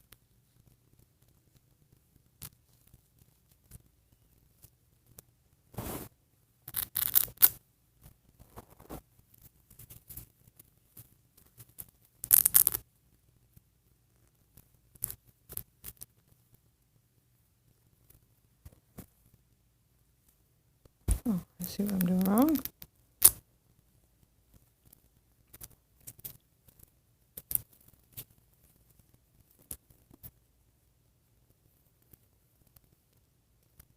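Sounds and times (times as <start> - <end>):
faint scratches: 0.1 - 12.8.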